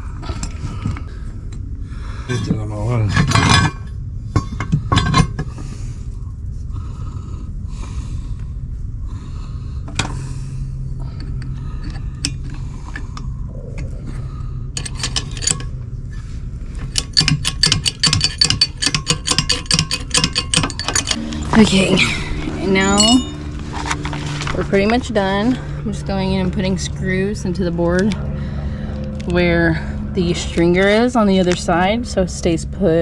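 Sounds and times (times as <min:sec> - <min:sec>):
low hum: 0:00.0 - 0:33.0
metal tools clicking and scraping: 0:14.8 - 0:15.8, 0:16.9 - 0:25.8
rattling clicks: 0:14.8 - 0:15.8, 0:16.9 - 0:25.6.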